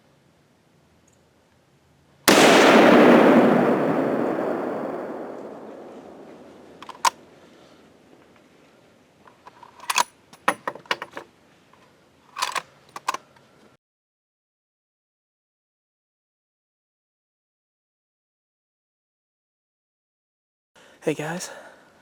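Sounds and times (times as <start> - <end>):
rifle shot echoing: 2.3 - 7.3
sharp metallic clicks and knocks: 6.8 - 7.2, 9.3 - 11.2, 12.4 - 13.2.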